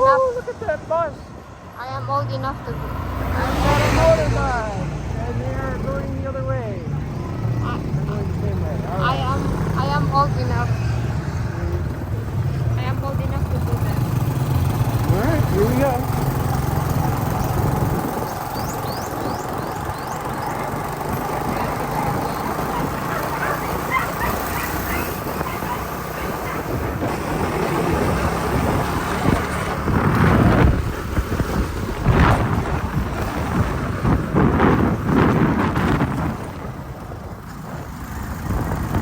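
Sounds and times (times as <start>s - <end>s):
wind and road noise: 0.0s - 39.0s
motorcycle engine running: 6.8s - 39.0s.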